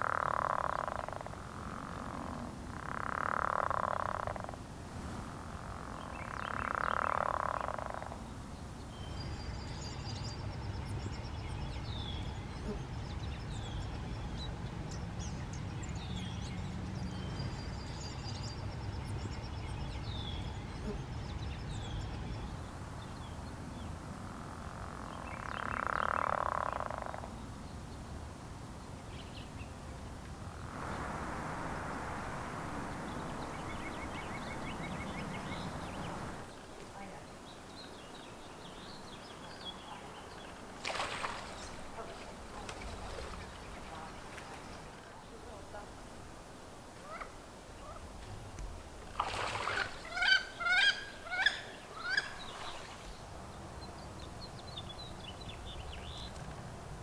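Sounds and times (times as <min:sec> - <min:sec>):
frog snoring call: 0:00.0 - 0:08.8, 0:22.6 - 0:36.5.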